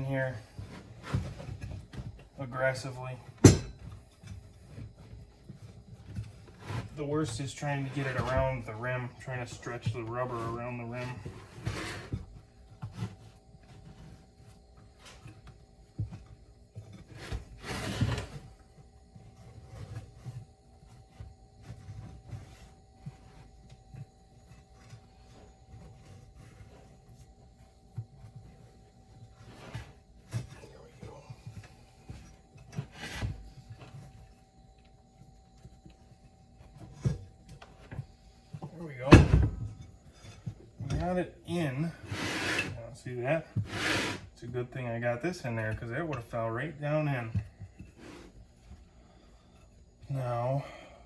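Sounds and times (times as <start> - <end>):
scraping noise: 41.0 - 47.3.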